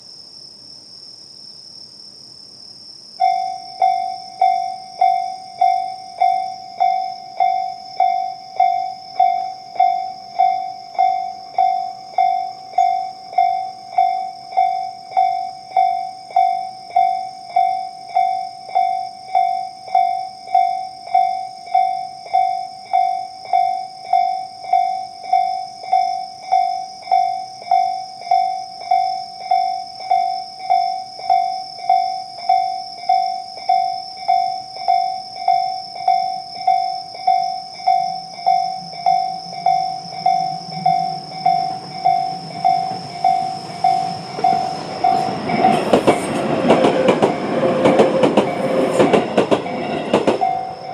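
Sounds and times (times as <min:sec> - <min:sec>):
electronic level-crossing bell: 0:03.2 - 0:46.0, 0:48.7 - 0:50.9
high-pitched drone: 0:37.1 - 0:50.9.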